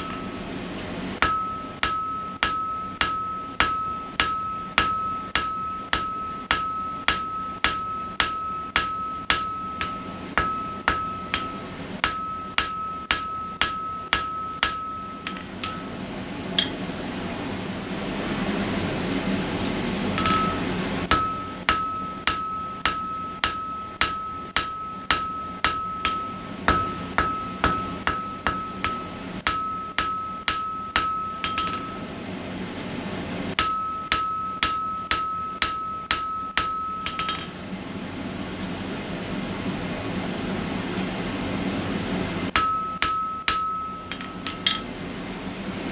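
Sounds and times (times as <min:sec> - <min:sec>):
hammer striking steel on anvil: 0:00.0 - 0:00.4, 0:01.2 - 0:16.0, 0:16.6 - 0:16.9, 0:20.1 - 0:32.1, 0:33.5 - 0:37.7, 0:42.5 - 0:45.0.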